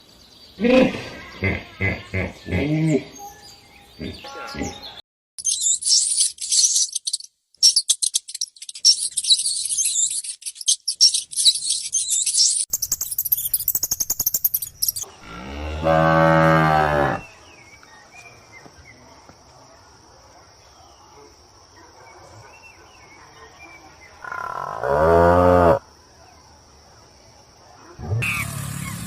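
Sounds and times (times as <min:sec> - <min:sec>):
small birds chirping: 0:00.0 - 0:15.8
cricket chirping: 0:05.4 - 0:28.9
cow mooing: 0:15.2 - 0:17.2.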